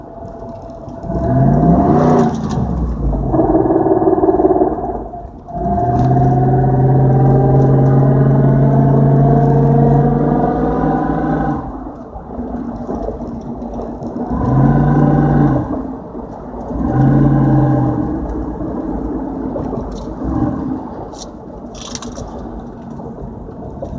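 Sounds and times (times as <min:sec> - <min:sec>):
car engine revving: 0:00.2 - 0:11.8, 0:14.3 - 0:16.0, 0:16.6 - 0:21.3.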